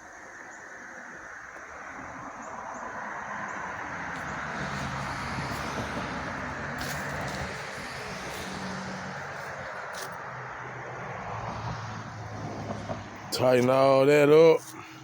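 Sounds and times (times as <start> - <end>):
continuous rushing hiss: 0.0 - 11.2
engine running: 3.8 - 11.2.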